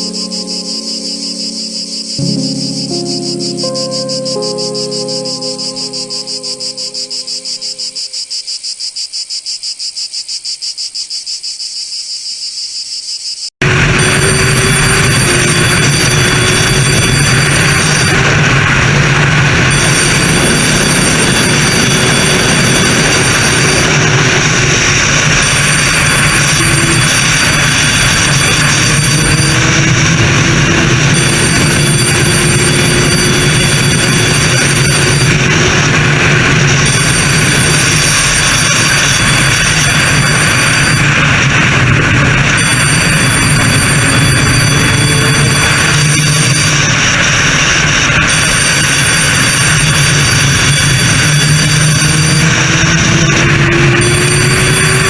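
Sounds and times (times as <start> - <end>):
soft sustained music notes: 0.0 - 8.2
moving vehicle running noise: 0.0 - 8.5, 13.6 - 55.0
crickets chirping: 0.0 - 13.5.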